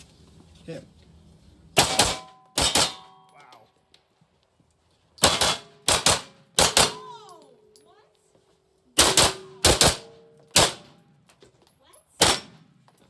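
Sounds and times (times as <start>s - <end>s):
pistol shots: 1.8s - 3.2s, 5.2s - 7.0s, 9.0s - 11.0s, 12.2s - 12.7s.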